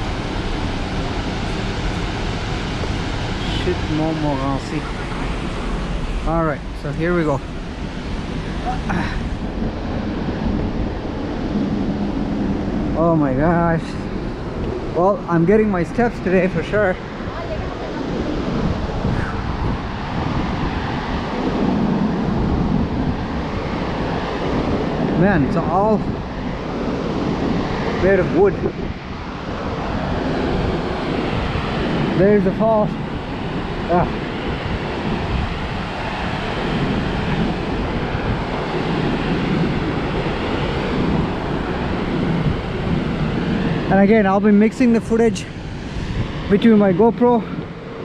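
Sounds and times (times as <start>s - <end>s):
waterfall roaring: 0.0s - 22.2s, 35.3s - 48.0s
wind buffeting microphone: 0.0s - 48.0s.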